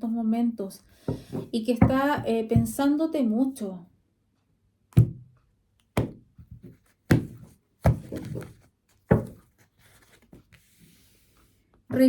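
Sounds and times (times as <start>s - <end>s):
cards thunking on tabletop: 1.0s - 2.0s, 5.0s - 5.2s, 6.0s - 9.5s.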